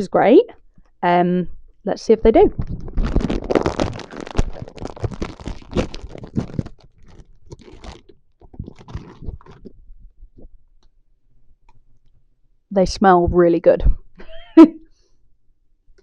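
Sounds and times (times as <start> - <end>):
crisp packet crinkling: 2.4 - 9.8.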